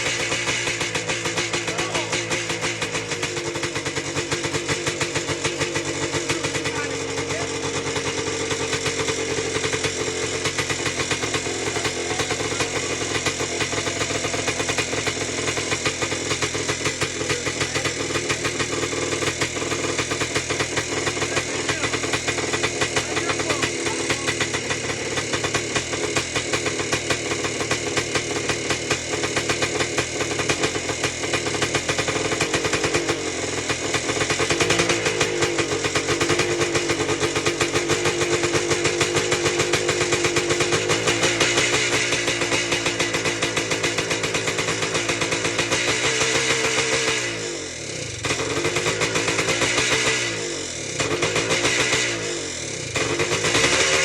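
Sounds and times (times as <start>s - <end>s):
two-stroke engine running: 0.0s - 54.0s.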